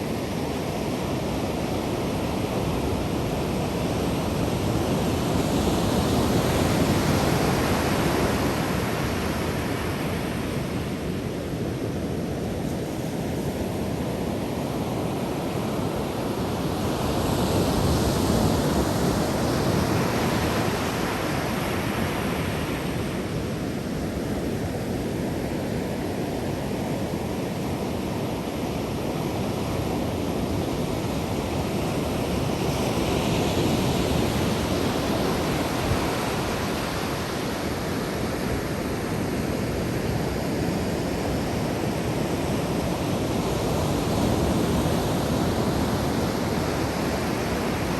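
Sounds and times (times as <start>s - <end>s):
waves breaking on shore: 0.0s - 47.9s.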